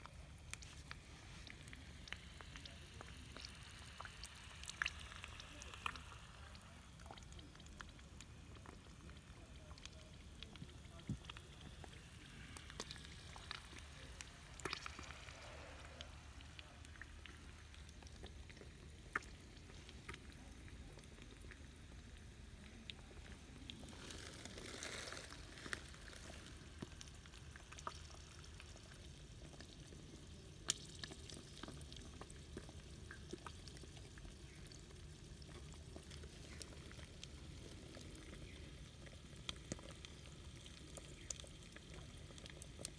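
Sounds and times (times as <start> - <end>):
steady low hum: 0.0 - 29.2.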